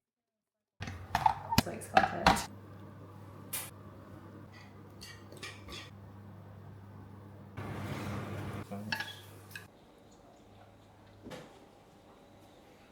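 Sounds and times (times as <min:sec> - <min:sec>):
dishes and cutlery clinking: 0:04.4 - 0:06.0, 0:08.9 - 0:09.7.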